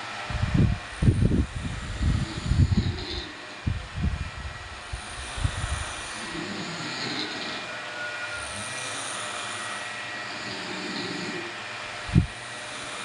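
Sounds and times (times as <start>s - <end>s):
person snoring: 1.0s - 3.5s, 4.9s - 11.6s, 12.2s - 13.0s.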